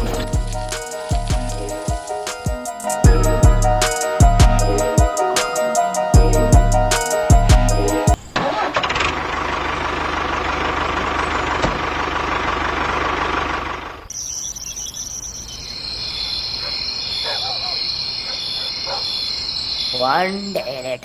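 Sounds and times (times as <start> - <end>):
insects chirping: 0.0 - 8.4, 14.0 - 21.0
small engine running: 8.8 - 14.1.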